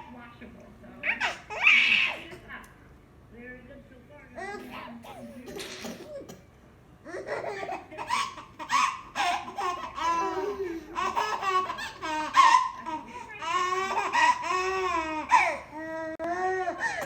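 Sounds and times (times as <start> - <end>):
baby laughing: 7.1 - 15.6.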